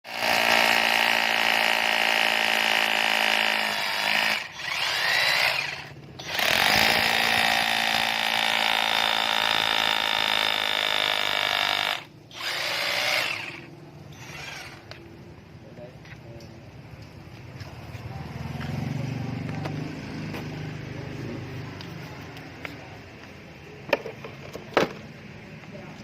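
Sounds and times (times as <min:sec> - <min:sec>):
hammer drill whining: 0:00.1 - 0:15.0.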